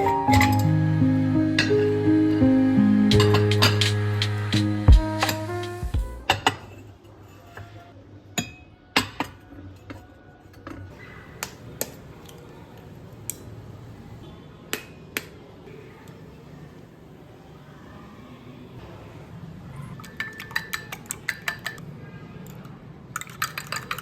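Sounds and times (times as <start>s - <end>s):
dishes clinking: 0.0s - 0.8s.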